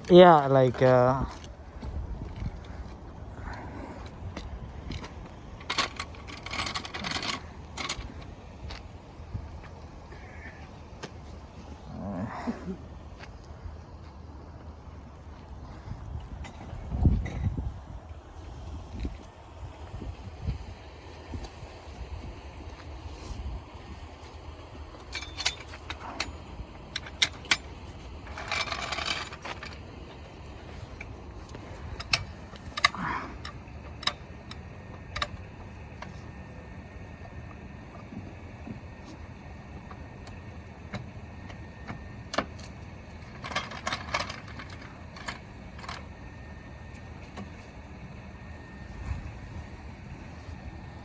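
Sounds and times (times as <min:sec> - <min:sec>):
steady low rumble: 0:00.0 - 0:51.0
wind rumble on microphone: 0:01.1 - 0:10.5, 0:15.2 - 0:27.3, 0:48.6 - 0:51.0
tools rattling: 0:04.0 - 0:08.9, 0:24.2 - 0:36.5, 0:39.8 - 0:46.2.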